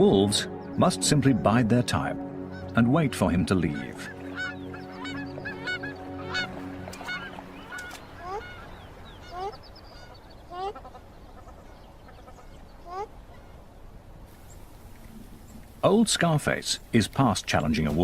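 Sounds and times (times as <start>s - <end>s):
sustained background music: 0.0s - 10.4s
bird calling: 3.6s - 13.6s.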